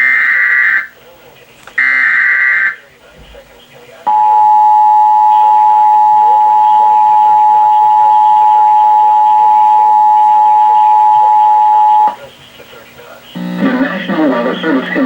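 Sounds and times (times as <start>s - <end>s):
two-tone alert signal: 4.1s - 12.2s.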